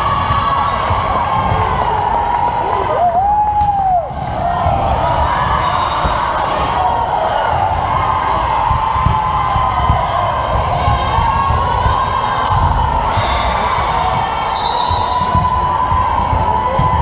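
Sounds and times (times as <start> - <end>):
crowd chatter: 0.0 - 17.0
volleyball bouncing on wooden floor: 8.5 - 12.9, 13.8 - 17.0.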